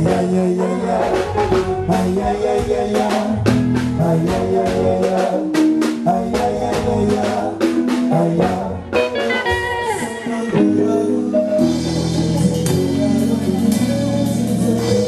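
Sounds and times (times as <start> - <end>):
drum kit beat: 0.0 - 15.0
live band playing: 0.0 - 15.0
falling melodic line: 8.4 - 13.7.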